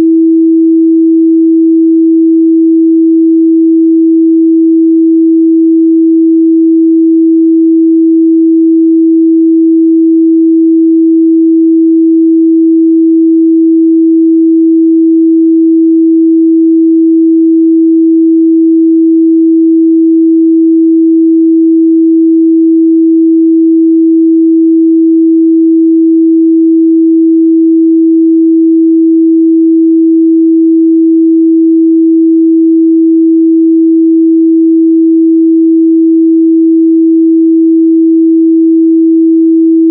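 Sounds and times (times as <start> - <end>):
sine-wave test tone: 0.0 - 39.9.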